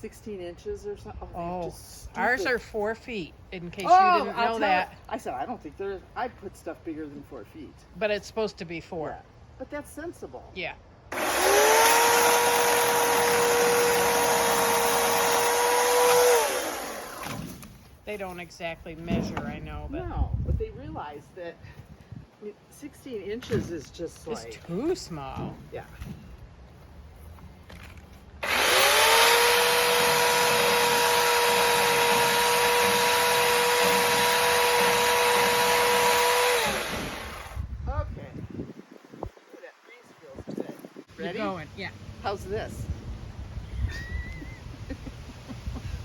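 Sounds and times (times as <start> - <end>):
chainsaw running and winding down: 11.1 - 17.7, 28.4 - 37.6.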